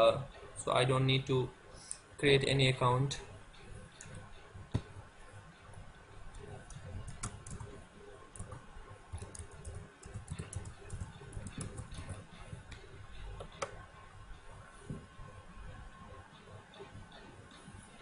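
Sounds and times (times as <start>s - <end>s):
computer keyboard typing: 6.4s - 12.8s.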